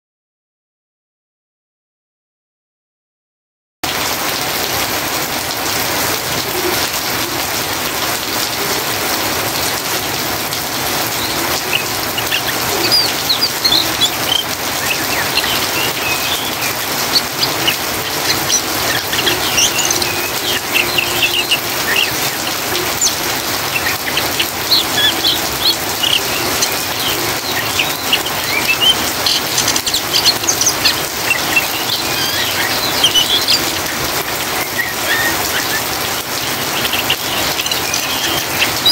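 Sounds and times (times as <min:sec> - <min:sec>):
steady rain falling: 0:03.8 - 0:38.9
bird twittering chirps: 0:10.7 - 0:38.9.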